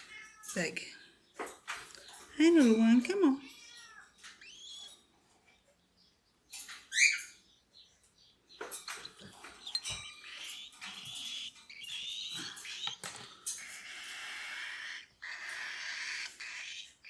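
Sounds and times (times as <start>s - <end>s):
chicks raspy chirping: 3.6s - 17.0s.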